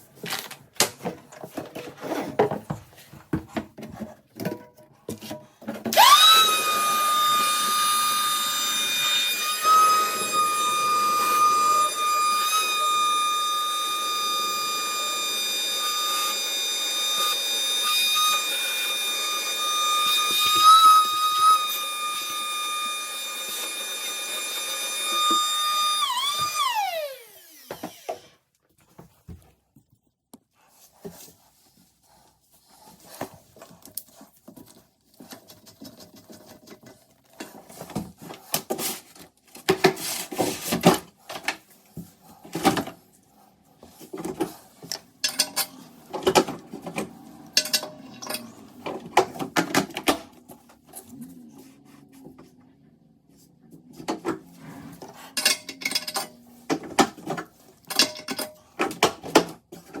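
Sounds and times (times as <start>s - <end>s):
metal tools clinking on porcelain: 47.6s - 48.5s, 55.4s - 56.4s.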